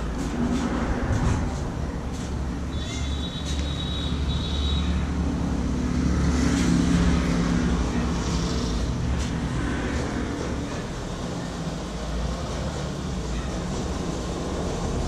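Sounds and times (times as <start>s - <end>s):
motor vehicle engine rumble: 0.0s - 15.0s.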